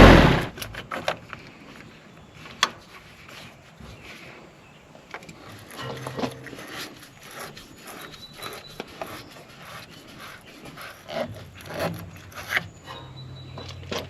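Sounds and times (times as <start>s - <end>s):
parts rubbing and scraping: 5.2s - 14.0s.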